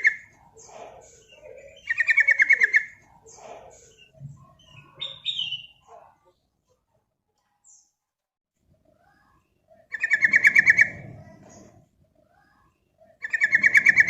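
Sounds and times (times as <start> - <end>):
bird singing: 0.0 - 6.0, 9.8 - 11.8, 13.0 - 14.0.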